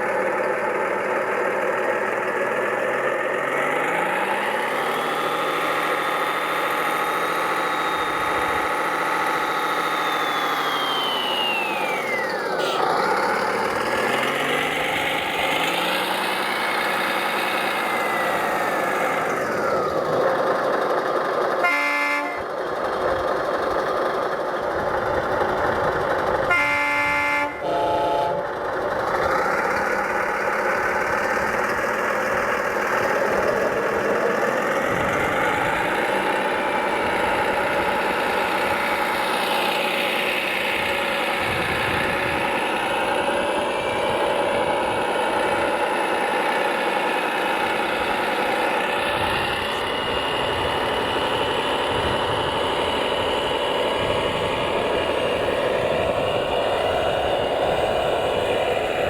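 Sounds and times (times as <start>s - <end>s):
toy vehicle motors whining: 3.6s - 20.7s.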